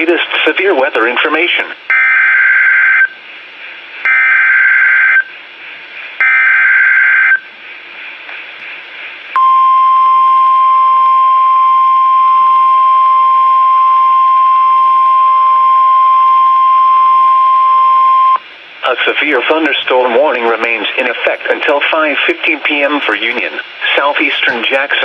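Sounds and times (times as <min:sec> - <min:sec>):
steady alarm tone: 0:01.9 - 0:03.1, 0:04.1 - 0:05.3, 0:06.2 - 0:07.4.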